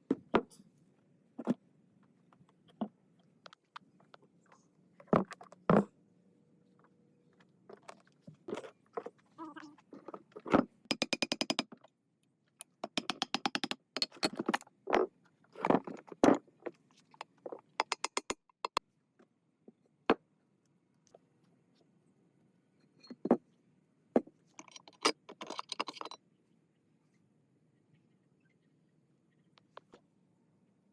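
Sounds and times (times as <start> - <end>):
metal tools knocking and clinking: 12.8 - 14.6, 24.6 - 26.2.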